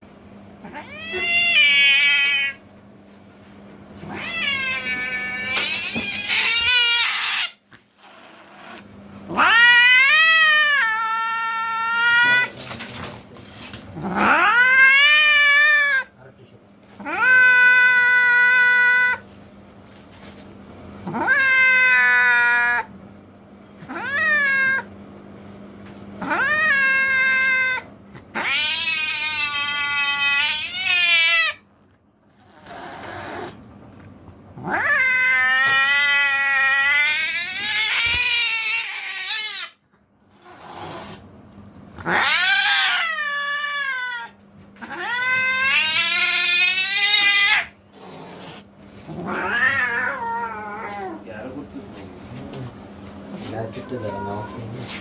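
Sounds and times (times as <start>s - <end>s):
cat yowling: 0.6s - 2.6s, 4.0s - 7.6s, 9.3s - 12.5s, 14.0s - 16.1s, 17.0s - 19.2s, 21.0s - 22.9s, 23.8s - 24.9s, 26.2s - 31.6s, 34.6s - 39.8s, 42.0s - 47.8s, 49.2s - 51.2s, 53.6s - 54.8s.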